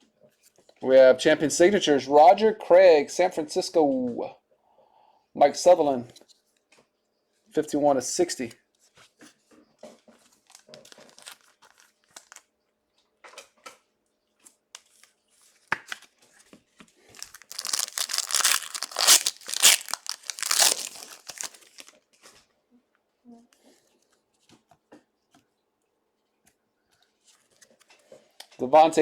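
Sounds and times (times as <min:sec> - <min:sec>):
trading cards rustling and clicking: 0:10.2 - 0:12.4, 0:17.1 - 0:21.9
wrapper crinkling and tearing: 0:10.4 - 0:12.5, 0:17.1 - 0:22.0.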